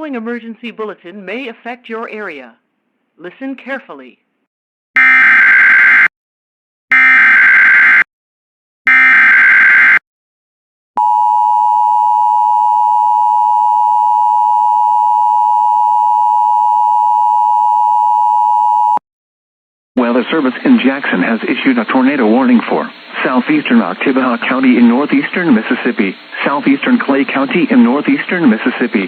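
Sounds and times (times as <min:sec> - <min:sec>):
loud steady attention tone: 0:11.0 - 0:19.0.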